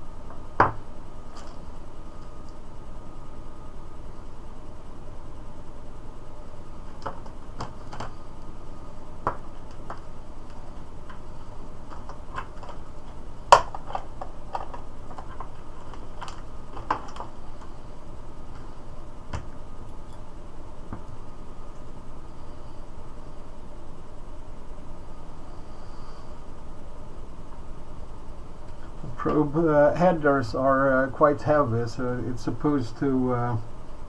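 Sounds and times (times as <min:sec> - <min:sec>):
steady hiss: 0:27.8 - 0:34.0.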